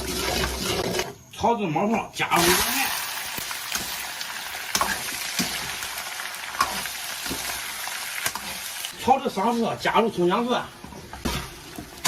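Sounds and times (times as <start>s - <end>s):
ribs sizzling in hot oil: 2.3s - 12.0s.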